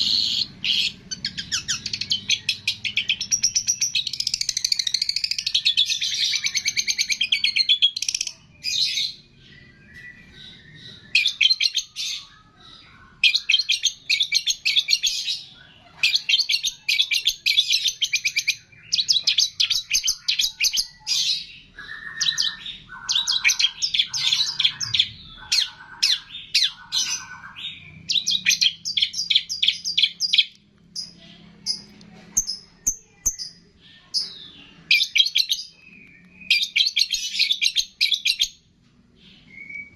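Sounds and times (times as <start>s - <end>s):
songbird chattering trills: 0.0s - 38.5s
low buzzy bird phrases: 19.6s - 30.2s.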